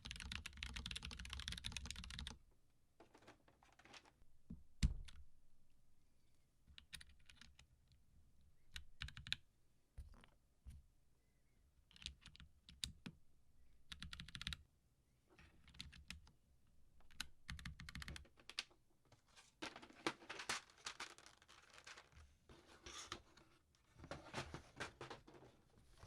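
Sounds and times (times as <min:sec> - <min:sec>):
mechanical keyboard typing: 0:00.0 - 0:02.4, 0:08.8 - 0:09.4, 0:13.9 - 0:14.6, 0:15.7 - 0:16.2, 0:17.1 - 0:18.2.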